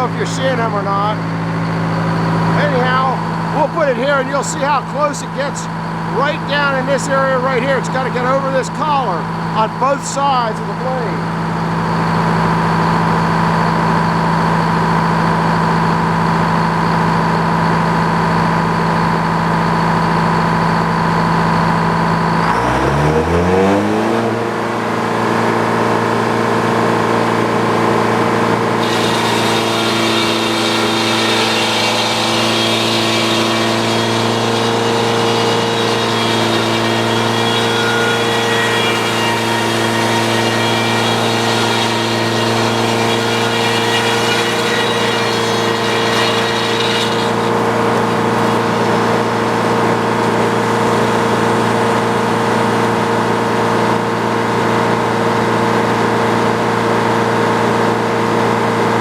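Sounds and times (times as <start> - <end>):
band saw blade cutting log: 0.0 - 11.4, 22.4 - 54.1
sawmill engine revving: 0.0 - 59.0.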